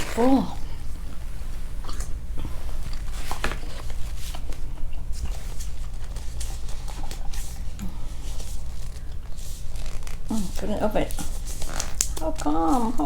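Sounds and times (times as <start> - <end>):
steady low hum: 0.0 - 13.0
food packaging crinkling: 2.7 - 13.0.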